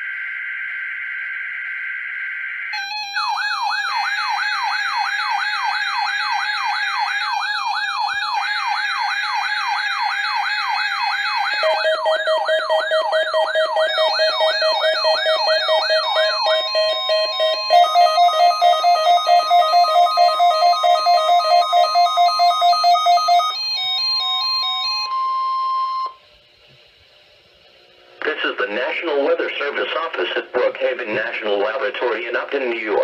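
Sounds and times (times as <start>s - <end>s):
high and low alternating beeps: 0.0s - 23.6s
sweeping siren alarm: 0.0s - 26.3s
pulsing beeps: 11.5s - 23.6s
steady alert tone: 11.6s - 22.5s.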